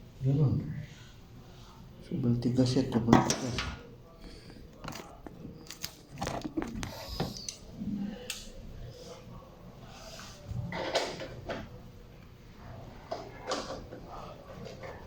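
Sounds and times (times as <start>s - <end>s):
clicks and scrapes of wiring: 4.7s - 7.6s.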